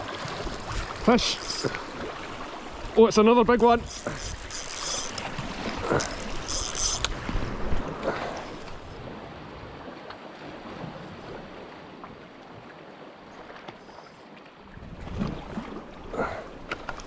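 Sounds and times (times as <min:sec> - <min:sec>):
sea washing against rocks: 0:00.0 - 0:09.4.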